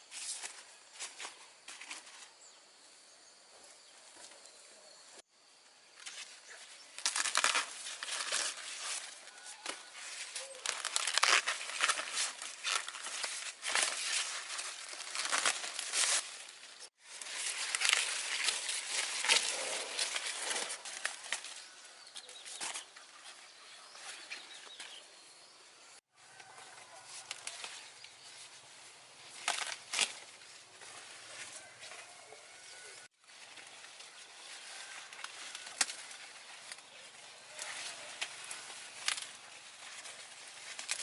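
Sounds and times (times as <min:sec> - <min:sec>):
dense rustling and crackling: 0:06.0 - 0:21.8, 0:32.9 - 0:41.0.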